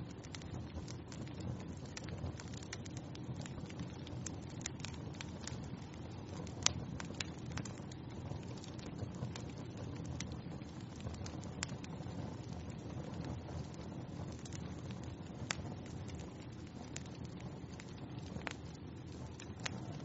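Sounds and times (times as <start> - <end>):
wood fire crackling and popping: 0.0 - 20.0.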